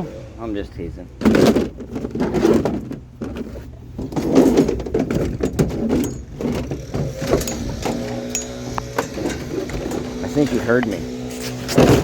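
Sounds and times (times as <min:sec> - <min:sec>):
vehicle engine running: 0:06.1 - 0:12.0.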